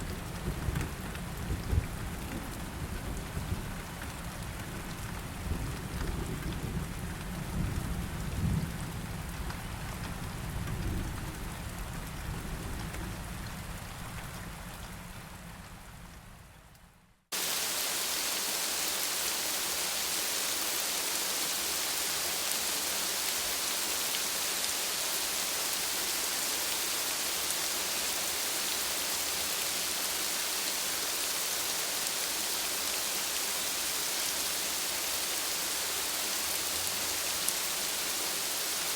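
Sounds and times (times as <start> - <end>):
hissing downpour: 0.0 - 16.4, 17.3 - 38.9
rain falling: 0.0 - 38.9
thunder rumbles: 4.8 - 9.5, 10.2 - 14.4.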